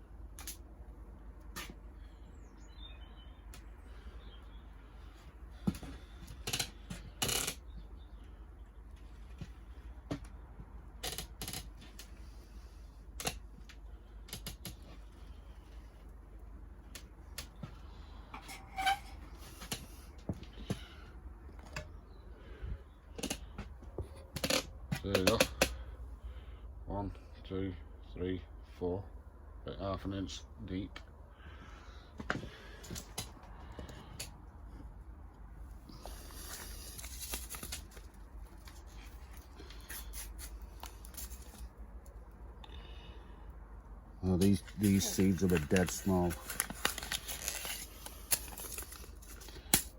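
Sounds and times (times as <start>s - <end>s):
paper seed packet crinkling: 35.9s - 41.7s, 44.3s - 49.9s.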